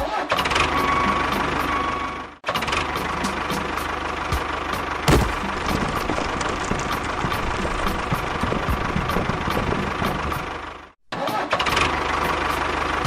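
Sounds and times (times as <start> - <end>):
sharp knock: 5.1 - 5.9.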